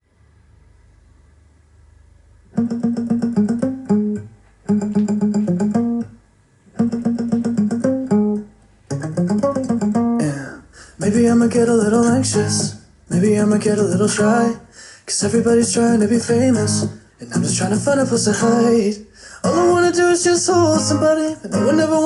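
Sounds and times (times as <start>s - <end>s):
faint hum: 0.0s - 2.9s
acoustic guitar over speaker: 2.4s - 22.0s.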